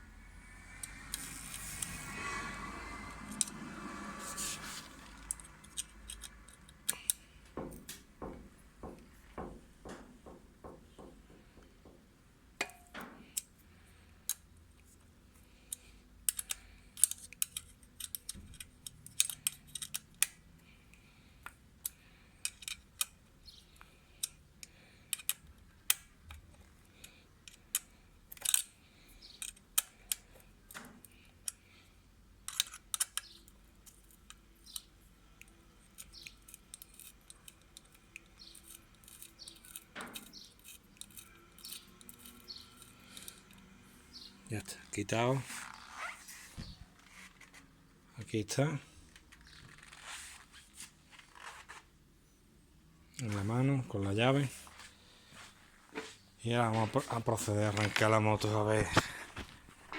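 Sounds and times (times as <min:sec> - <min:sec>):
wrench clicking on metal screw: 0:05.3 - 0:07.2, 0:15.7 - 0:20.3.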